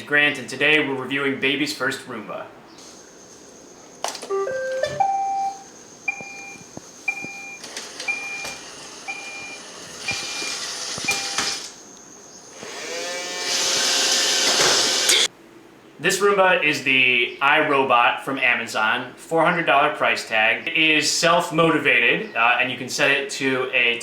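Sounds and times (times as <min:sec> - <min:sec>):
two-tone electronic beeps: 0:04.3 - 0:11.5
motor whine with hiss: 0:07.6 - 0:11.8, 0:12.5 - 0:15.3.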